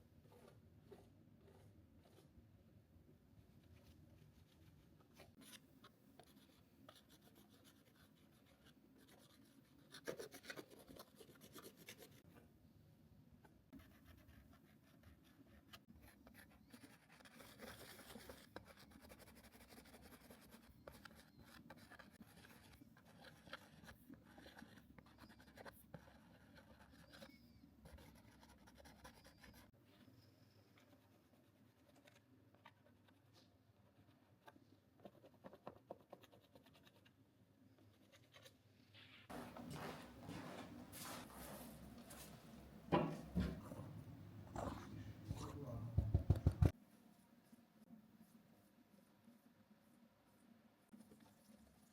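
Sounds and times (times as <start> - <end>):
drawing tool scratching on canvas: 0.2 - 2.4, 13.8 - 29.8.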